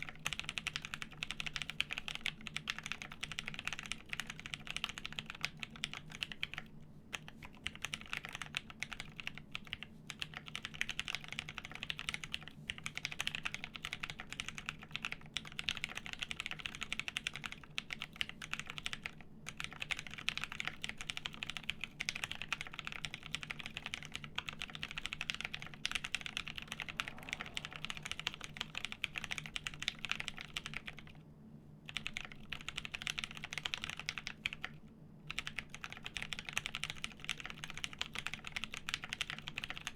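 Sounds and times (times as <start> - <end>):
fast typing on mechanical keyboard: 0.0 - 31.2, 31.8 - 39.9.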